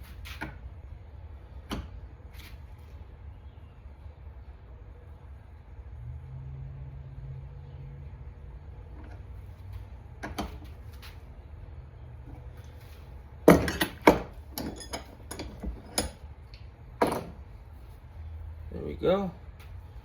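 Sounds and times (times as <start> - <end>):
metal parts clanking together: 13.5 - 16.2.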